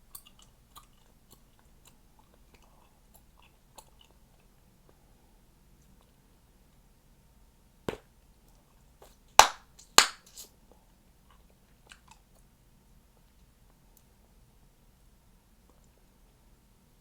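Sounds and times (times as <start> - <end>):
chewing gum popping: 0.1 - 4.5.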